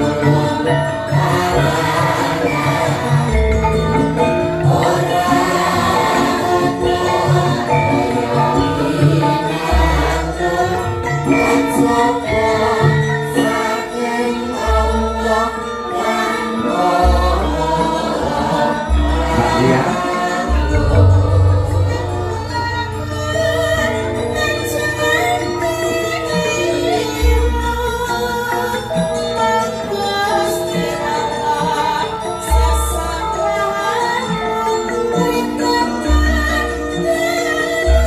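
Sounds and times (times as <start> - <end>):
metallophone tones: 0.0 - 38.0
voices singing: 0.0 - 38.0
low bass: 20.6 - 24.6.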